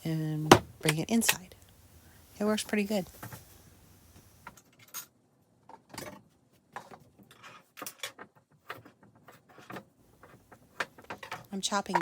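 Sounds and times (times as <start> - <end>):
kitchen things knocking and clicking: 5.7 - 12.0.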